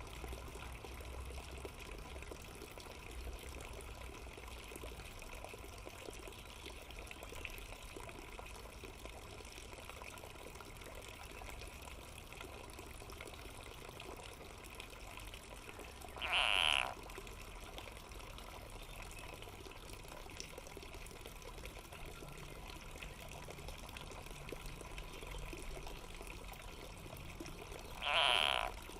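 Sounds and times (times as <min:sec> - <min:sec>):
steady watery hiss: 0:00.0 - 0:28.9
frog distress scream: 0:16.2 - 0:17.0, 0:28.0 - 0:28.8.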